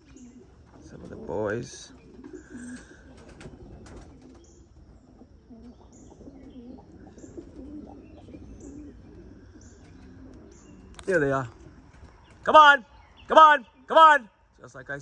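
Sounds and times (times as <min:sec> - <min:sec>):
pigeons cooing: 0:00.0 - 0:13.9.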